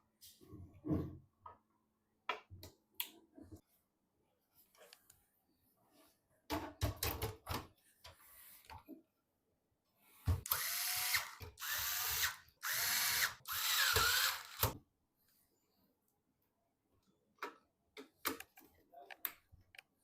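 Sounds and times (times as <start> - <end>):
electric screwdriver whirring: 10.5 - 14.8.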